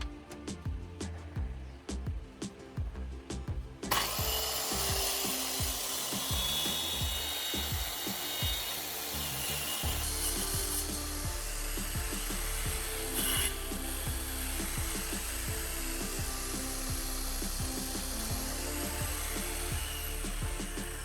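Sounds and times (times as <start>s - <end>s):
faint background music: 0.0s - 21.0s
circular saw cutting wood: 3.8s - 21.0s.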